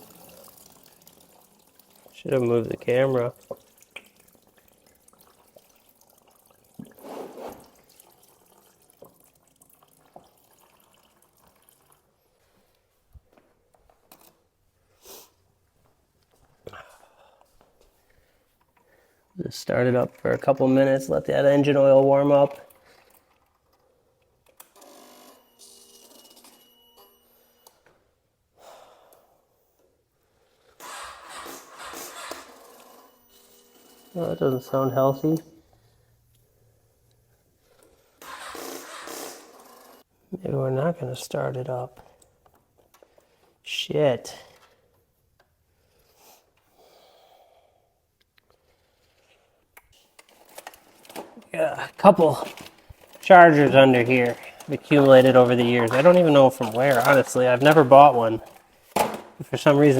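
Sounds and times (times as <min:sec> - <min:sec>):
motorcycle starter buzzing and clicking: 0:30.8 - 0:34.1, 0:38.2 - 0:40.0
faint exhale: 0:45.9 - 0:48.0.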